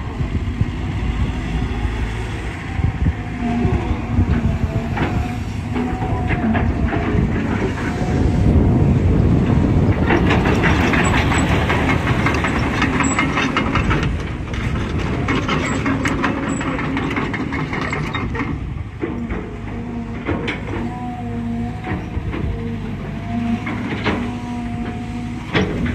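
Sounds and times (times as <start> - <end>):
diesel engine running: 0.0 - 25.9.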